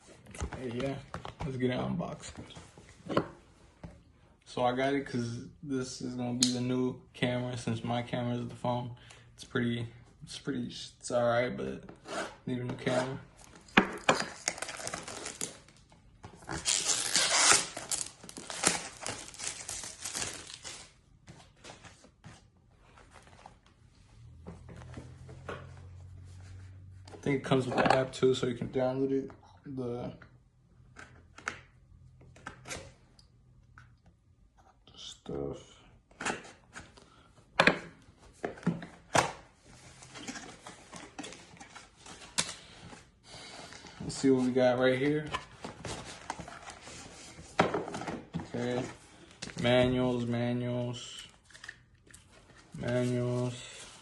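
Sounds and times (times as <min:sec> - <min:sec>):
cardboard packaging rustling: 0:12.8 - 0:23.7
plastic wrap crinkling and tearing: 0:16.5 - 0:20.9.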